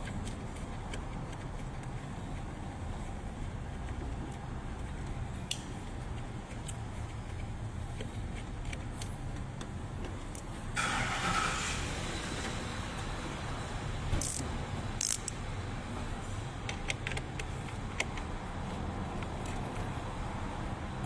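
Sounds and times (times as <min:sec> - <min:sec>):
sharp light handling clicks: 0:05.4 - 0:05.8.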